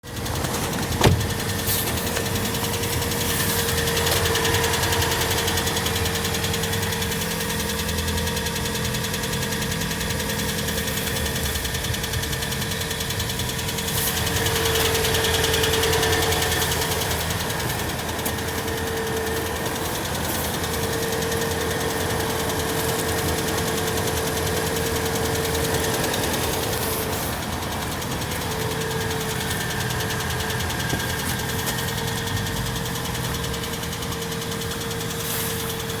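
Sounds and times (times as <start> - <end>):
car engine idling with knock: 0.0 - 36.0
steady whine: 13.6 - 36.0.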